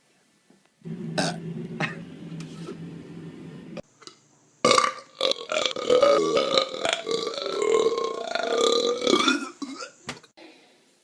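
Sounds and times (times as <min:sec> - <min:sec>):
person burping loudly: 0:01.2 - 0:02.0, 0:04.6 - 0:10.0.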